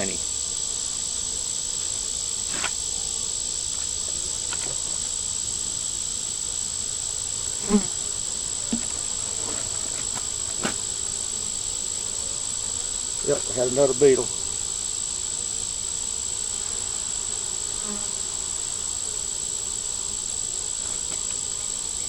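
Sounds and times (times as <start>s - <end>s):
high-pitched insect drone: 0.0s - 22.0s
wooden hive frames knocking: 8.6s - 11.0s.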